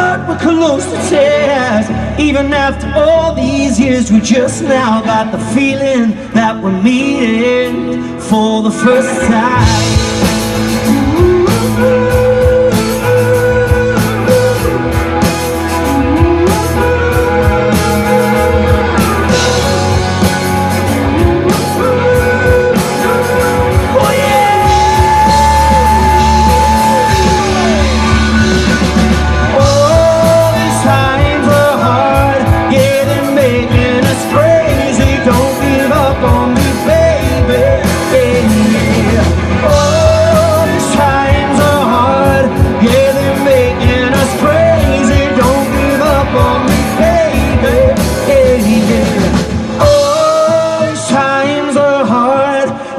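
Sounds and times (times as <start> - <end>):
live rock band playing: 0.0 - 52.9
wavering lead melody: 9.0 - 50.4.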